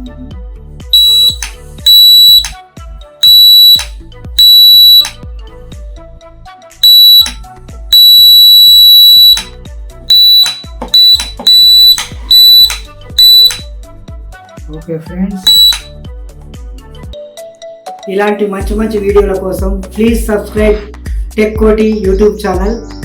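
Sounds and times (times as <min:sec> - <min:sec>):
background music: 0:00.0 - 0:23.0
electric buzzer beeping: 0:01.0 - 0:02.6, 0:03.2 - 0:05.2, 0:06.8 - 0:07.4, 0:08.0 - 0:09.5, 0:10.1 - 0:13.7, 0:15.5 - 0:15.9.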